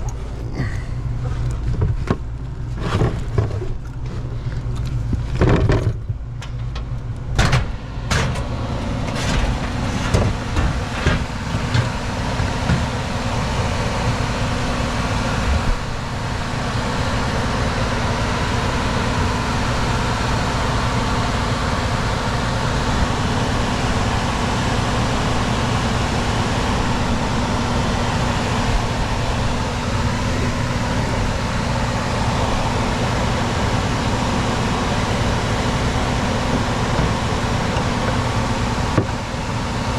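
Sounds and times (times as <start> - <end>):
hvac system humming: 0.0 - 39.9
knocks and clatters: 1.3 - 8.5, 9.1 - 13.2.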